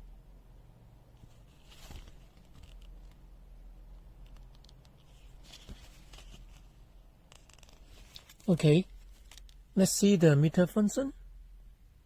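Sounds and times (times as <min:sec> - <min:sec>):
low steady hum: 0:00.0 - 0:12.0
short rustling scrapes: 0:05.1 - 0:06.8.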